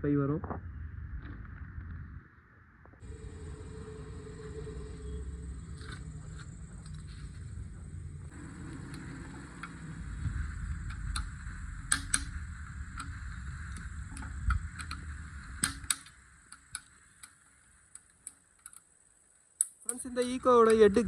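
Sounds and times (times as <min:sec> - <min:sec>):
low rumble: 0:00.0 - 0:16.5
engine parts clicking and knocking: 0:03.0 - 0:18.9, 0:19.6 - 0:21.0.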